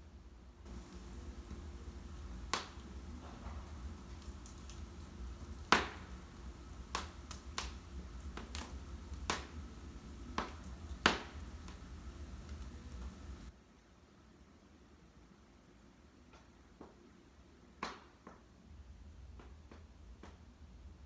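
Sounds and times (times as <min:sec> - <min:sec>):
burning logs popping: 0:00.7 - 0:13.5
low rumble of flames: 0:00.7 - 0:13.5
wood fire crackling: 0:00.7 - 0:13.5.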